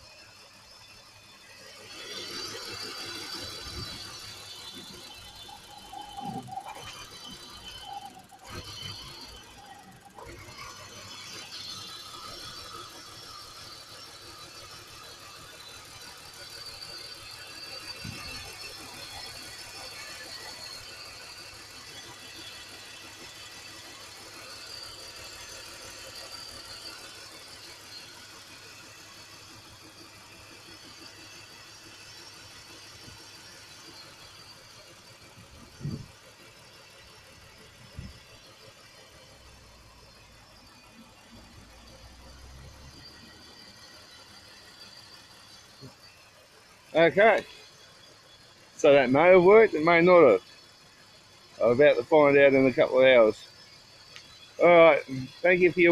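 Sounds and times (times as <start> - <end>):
engine idling: 0.0 - 55.9.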